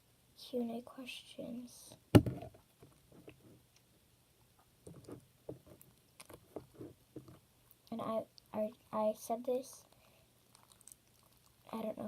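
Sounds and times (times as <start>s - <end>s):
slime squelching: 9.8s - 11.8s.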